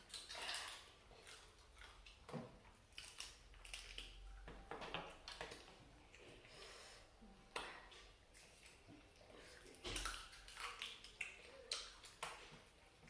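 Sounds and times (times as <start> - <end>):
chewing prawn shells: 0.0 - 4.4, 8.3 - 13.0.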